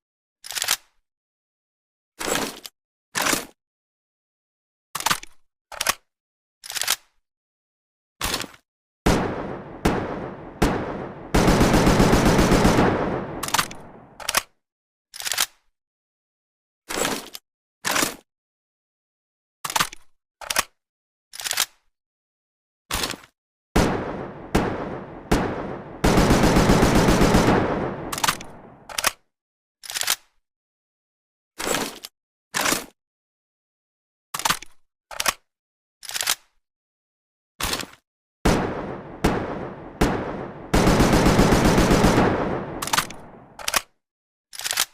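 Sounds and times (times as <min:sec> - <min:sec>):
automatic gunfire burst: 0:09.1 - 0:14.2, 0:23.8 - 0:28.9, 0:38.5 - 0:43.6
rifle single shots echoing: 0:09.1 - 0:14.2, 0:23.8 - 0:28.9, 0:38.5 - 0:43.6.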